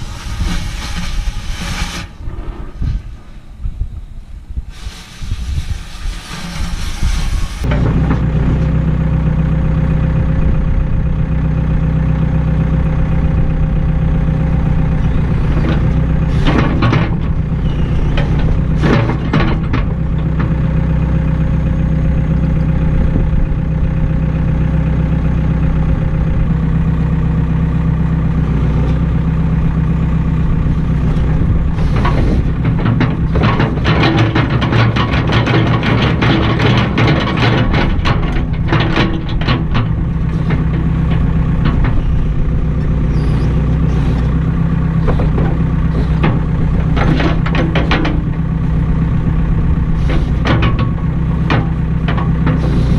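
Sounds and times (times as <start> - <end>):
engine running steadily: 0.0 - 52.9
short hiss: 4.7 - 7.6.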